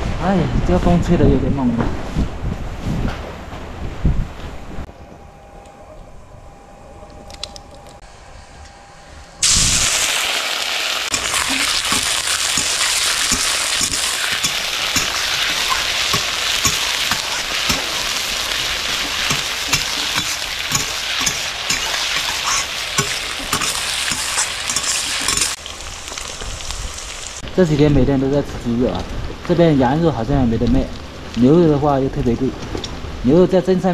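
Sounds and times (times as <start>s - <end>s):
food sizzling in hot oil: 9.4s - 27.5s.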